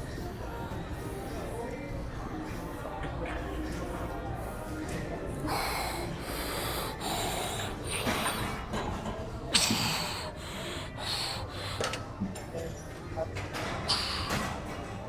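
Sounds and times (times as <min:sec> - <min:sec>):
short hissing exhalations: 0:05.5 - 0:08.6, 0:09.6 - 0:11.9, 0:13.9 - 0:14.5.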